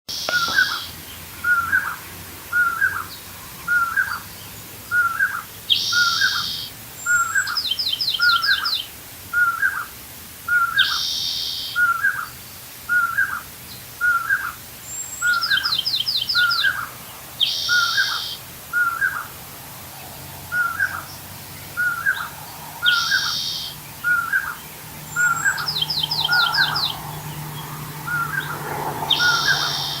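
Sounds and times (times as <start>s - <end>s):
bird calling: 0.1s - 9.9s, 10.5s - 19.4s, 20.0s - 30.0s.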